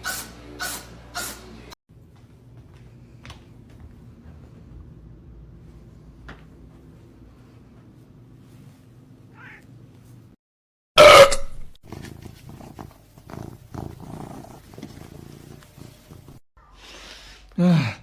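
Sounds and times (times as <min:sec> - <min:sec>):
quiet cat sounds: 0:09.2 - 0:09.8
cat crying loudly: 0:09.3 - 0:09.7
cat purring: 0:11.9 - 0:16.4.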